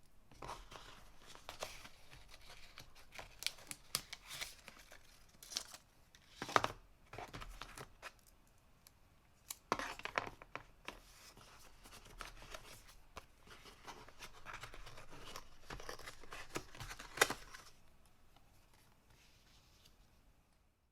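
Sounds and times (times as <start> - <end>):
paper and plastic rustling: 0.3 - 8.2, 9.8 - 17.8.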